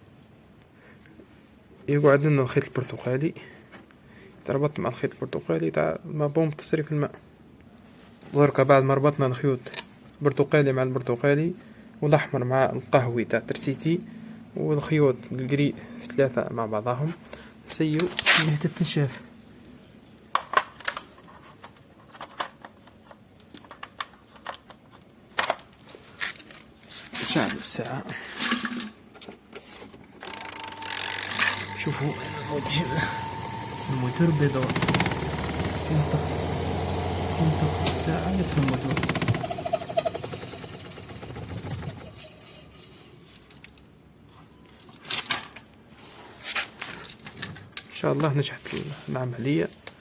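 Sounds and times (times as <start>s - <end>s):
washing machine motor running down: 31.2s - 42.2s.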